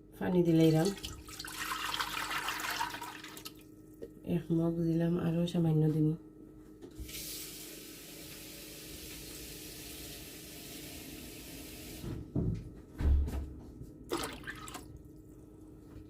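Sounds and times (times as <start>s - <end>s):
water being poured: 0.6s - 3.6s, 14.1s - 14.9s.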